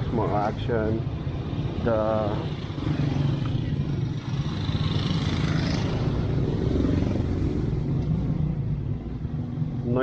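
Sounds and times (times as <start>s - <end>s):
scooter engine running: 2.5s - 7.9s.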